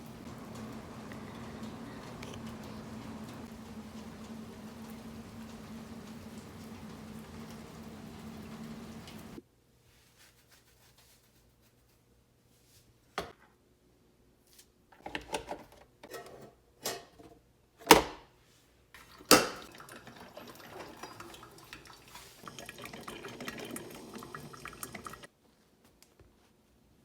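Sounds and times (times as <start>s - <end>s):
tap water running into vessel: 0.0s - 9.4s, 19.0s - 25.3s
kitchenware knocking and clattering: 19.2s - 22.0s.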